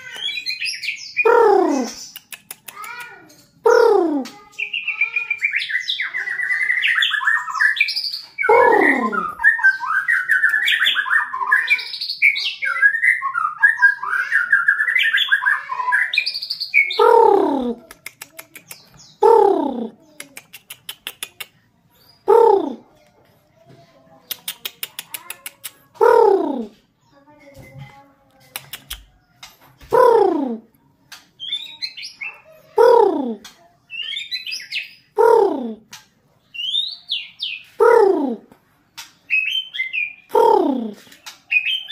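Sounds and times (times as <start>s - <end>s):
songbird whistling phrases: 0.1s - 2.4s, 3.6s - 17.8s, 31.4s - 38.5s, 39.3s - 41.9s.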